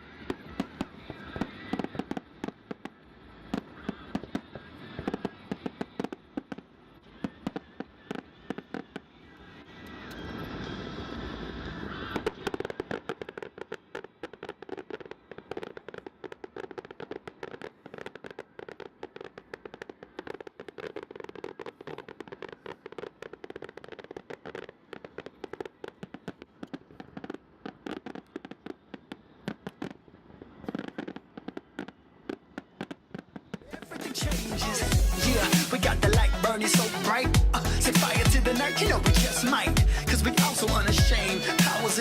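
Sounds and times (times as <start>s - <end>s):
fireworks crackling bangs: 0.0s - 42.0s.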